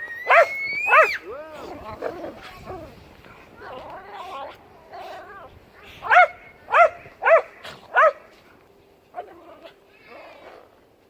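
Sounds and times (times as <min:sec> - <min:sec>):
dogs making soft wavering sounds: 0:00.0 - 0:10.8.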